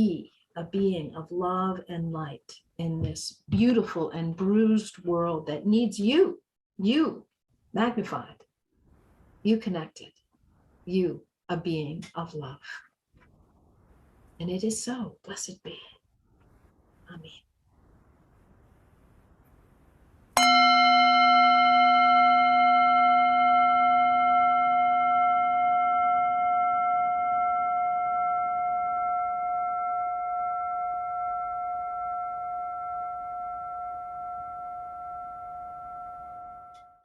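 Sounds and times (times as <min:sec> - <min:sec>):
singing bowl ringing: 0:20.4 - 0:37.0.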